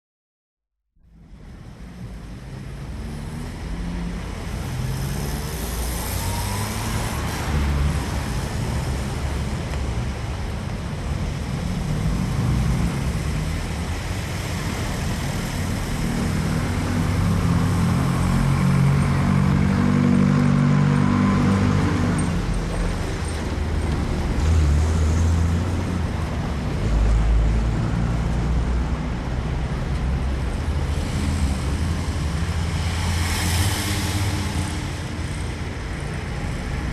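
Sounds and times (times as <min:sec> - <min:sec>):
traffic driving past: 0:01.2 - 0:36.9.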